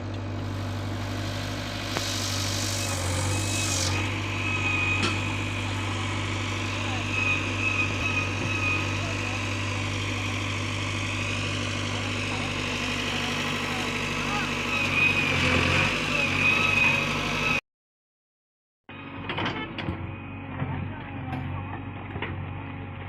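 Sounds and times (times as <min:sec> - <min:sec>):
diesel engine idling: 0:00.0 - 0:17.6.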